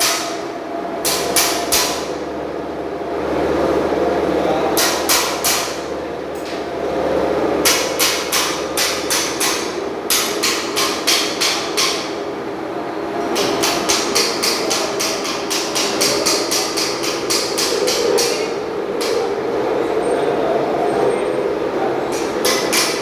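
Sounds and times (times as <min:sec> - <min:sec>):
hammer striking metal: 0:00.0 - 0:02.1, 0:07.6 - 0:12.2, 0:13.4 - 0:19.2, 0:22.1 - 0:23.0.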